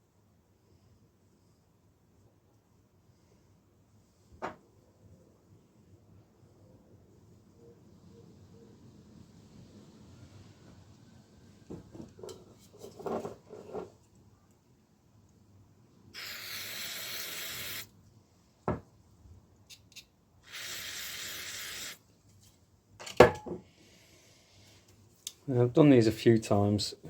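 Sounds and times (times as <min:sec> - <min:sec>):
aerosol spray bursts: 0:16.2 - 0:17.9, 0:20.4 - 0:22.0.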